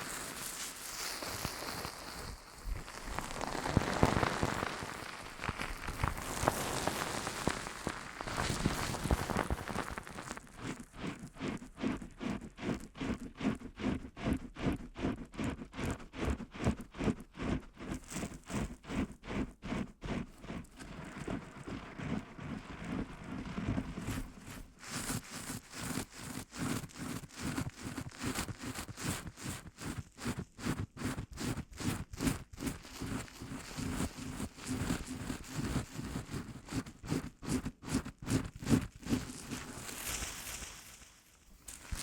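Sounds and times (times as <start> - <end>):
soft brushing strokes: 0.0 - 14.0, 17.1 - 27.6, 38.6 - 42.0.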